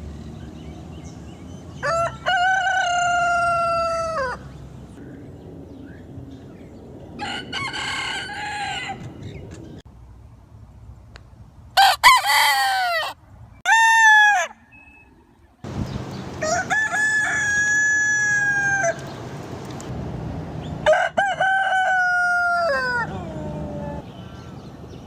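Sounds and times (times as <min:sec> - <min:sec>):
roosters crowing: 0:01.6 - 0:04.6, 0:07.2 - 0:09.4, 0:11.8 - 0:14.8, 0:16.4 - 0:19.2, 0:20.8 - 0:24.0.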